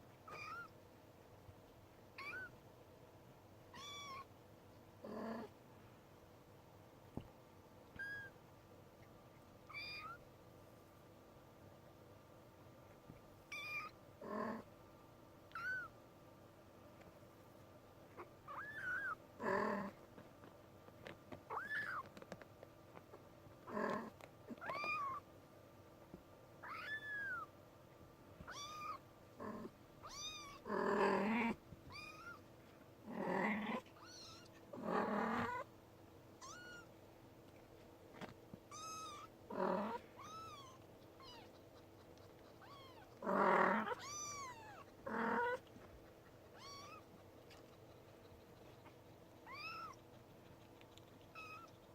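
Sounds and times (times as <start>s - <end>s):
kitten mewing: 28.4s - 29.0s, 38.7s - 45.7s, 46.5s - 47.7s, 49.4s - 50.0s.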